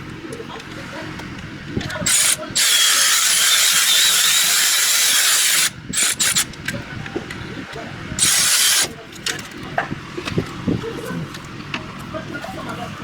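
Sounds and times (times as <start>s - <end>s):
power tool running: 2.1s - 6.5s, 8.2s - 8.9s
power tool trigger blips: 8.2s - 8.9s.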